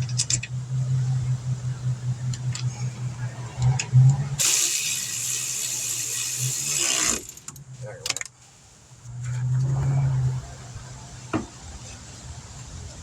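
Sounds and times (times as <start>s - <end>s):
steady low hum: 0.0s - 13.0s
power tool running a bolt in: 4.4s - 7.6s.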